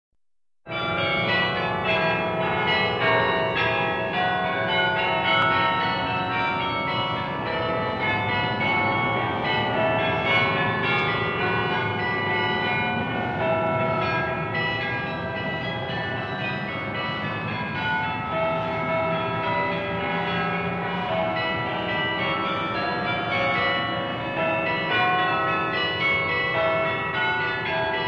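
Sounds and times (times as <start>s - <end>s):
church bells ringing a melody: 0.7s - 28.0s.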